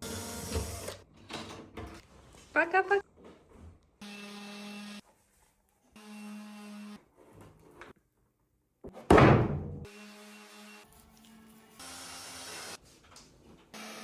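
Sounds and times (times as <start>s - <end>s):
loud thump: 9.1s - 9.9s.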